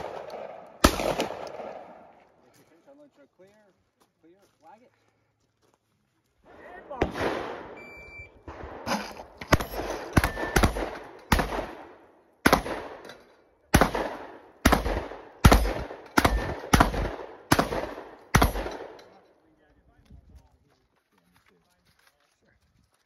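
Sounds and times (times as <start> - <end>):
shotgun shots: 0.0 - 2.2, 6.6 - 7.8, 8.4 - 19.1
short electronic beep: 7.8 - 8.4.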